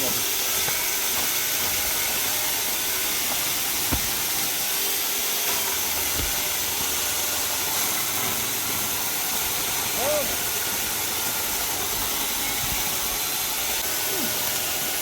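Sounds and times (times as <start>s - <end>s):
dull thumps: 0.6s - 4.8s, 5.5s - 7.5s.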